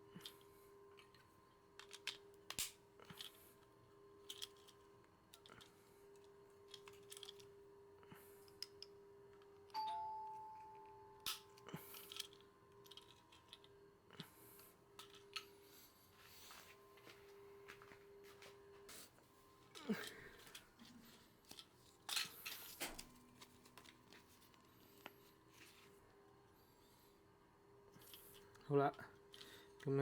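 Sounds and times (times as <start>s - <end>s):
faint steady hum: 0.0s - 30.0s
plastic parts clicking together: 1.8s - 3.4s, 4.2s - 7.5s, 11.2s - 13.7s
single ding: 9.8s - 11.1s.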